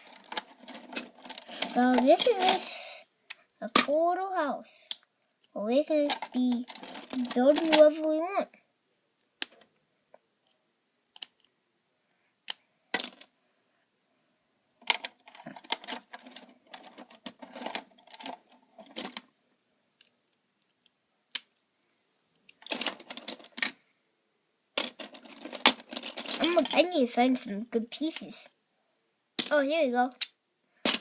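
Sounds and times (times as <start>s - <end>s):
plastic bricks clicking and clattering: 0.0s - 4.0s, 6.0s - 8.0s, 12.5s - 13.3s, 14.8s - 19.3s, 22.4s - 23.8s, 24.8s - 26.9s, 29.4s - 31.0s.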